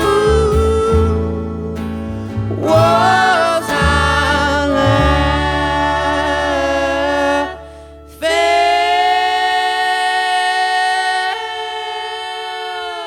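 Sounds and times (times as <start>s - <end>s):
instrumental backing: 0.0s - 10.0s
singer holding long notes: 0.0s - 13.0s.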